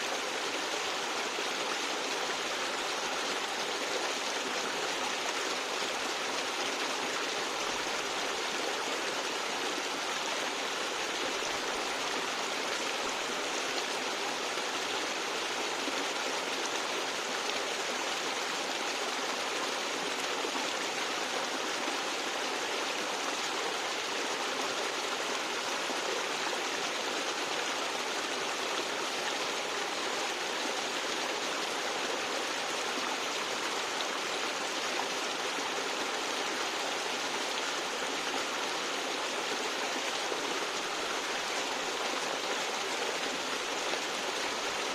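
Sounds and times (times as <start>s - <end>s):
stream gurgling over rocks: 0.0s - 44.9s.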